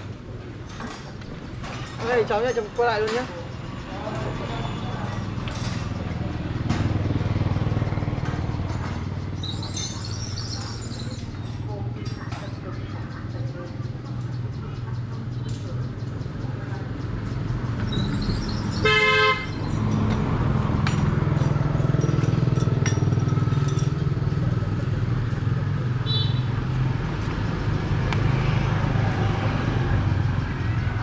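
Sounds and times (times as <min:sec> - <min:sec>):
engine rumbling: 0:00.0 - 0:31.0
vehicle horn honk: 0:18.8 - 0:19.5.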